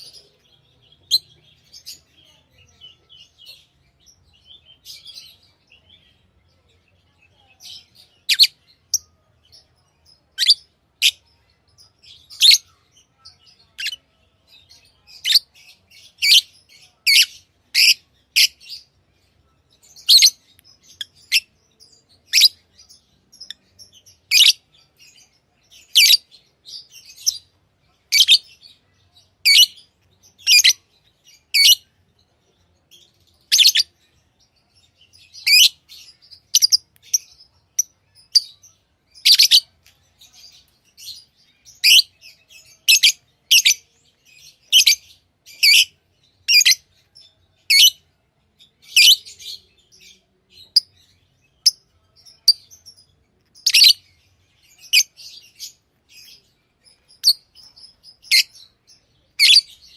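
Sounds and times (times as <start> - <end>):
lovebirds chirping: 0.0 - 59.9
loud high-pitched bird calls: 54.7 - 58.8, 59.4 - 59.9.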